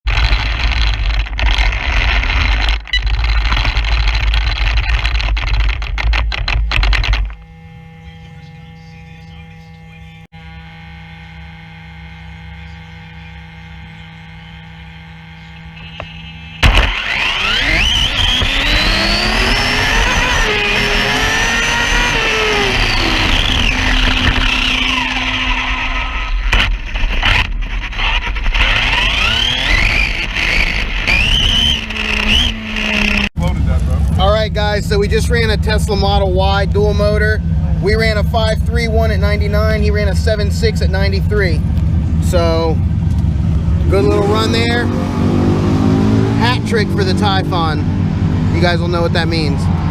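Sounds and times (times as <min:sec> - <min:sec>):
road rumble: 0:00.0 - 0:49.9
wind: 0:00.0 - 0:49.9
electric motor whine: 0:00.1 - 0:33.3.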